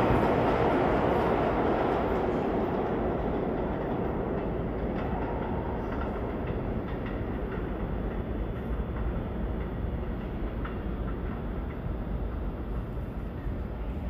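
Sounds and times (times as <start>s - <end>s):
subway train rumble: 0.0s - 14.0s
wheel clicks over rail joints: 2.1s - 12.5s.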